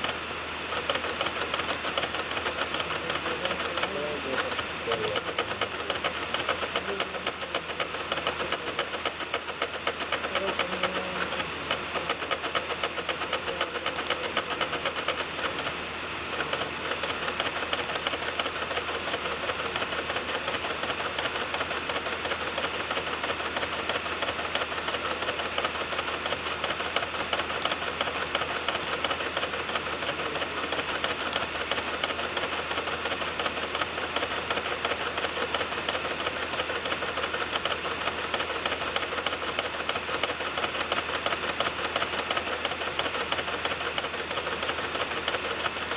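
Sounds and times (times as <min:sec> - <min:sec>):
disc drive clicking: 0:00.0 - 0:45.9
spinning disc whir: 0:00.0 - 0:45.9.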